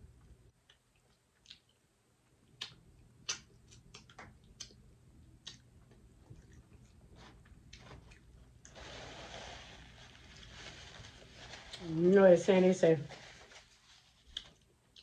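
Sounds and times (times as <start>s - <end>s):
soft mouth clicks and smacks: 0.6s - 8.3s, 14.3s - 15.0s
chewing: 0.7s - 1.8s, 5.4s - 8.4s.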